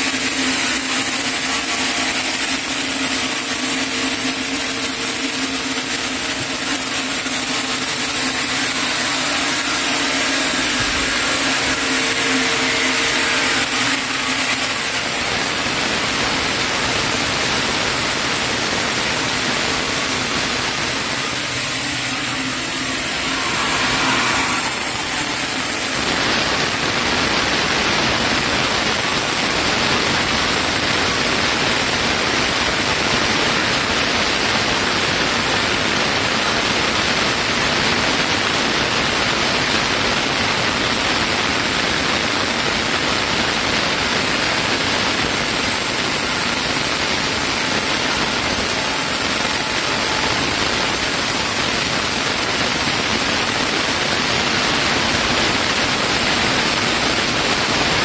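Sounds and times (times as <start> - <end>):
low machine hum: 0.0 - 31.6
saw cutting through log: 0.0 - 34.1, 41.3 - 58.0.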